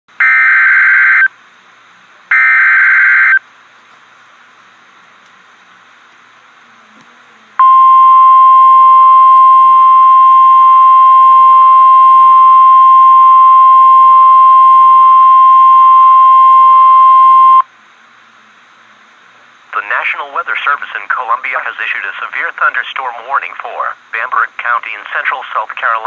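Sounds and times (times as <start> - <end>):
loud steady alarm beep: 0.2 - 1.3, 2.3 - 3.4, 7.6 - 17.7
faint radio hiss: 0.5 - 26.0.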